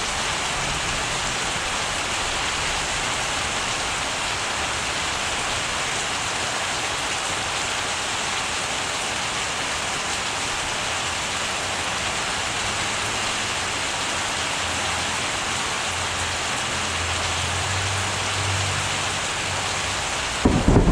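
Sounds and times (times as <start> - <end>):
heavy rain falling: 0.0 - 20.9
low rumble: 20.4 - 20.9.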